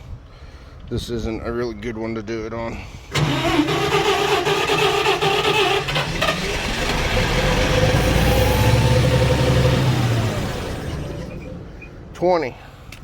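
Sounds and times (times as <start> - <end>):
low engine rumble: 2.3 - 13.0
engine cranking and firing: 3.1 - 11.8
engine whine: 3.1 - 12.2.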